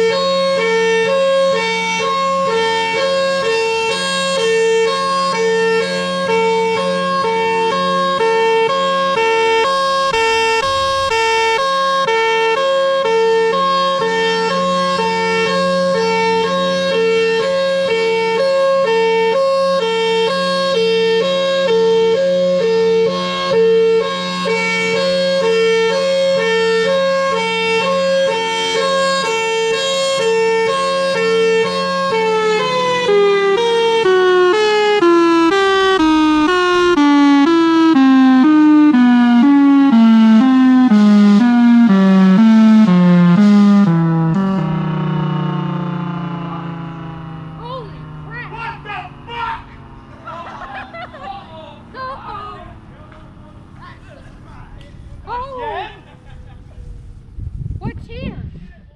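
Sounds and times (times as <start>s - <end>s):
two-tone warning siren: 0.0s - 56.2s
low hum: 10.0s - 12.1s, 36.1s - 54.4s.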